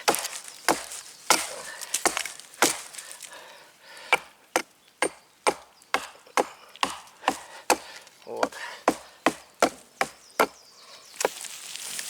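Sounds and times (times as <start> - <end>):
hatchet chopping wood: 0.0 - 3.0, 4.1 - 10.6.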